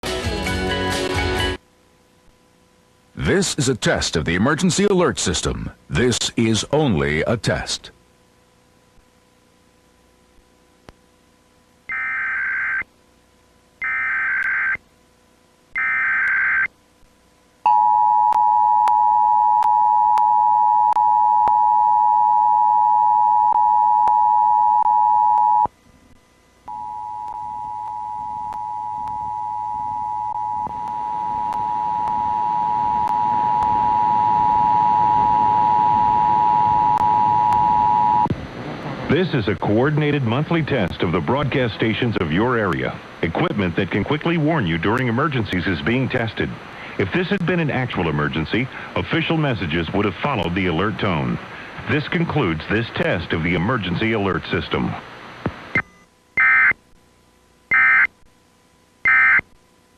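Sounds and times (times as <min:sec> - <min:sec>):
two-tone attention signal: 0:26.7 - 0:38.3.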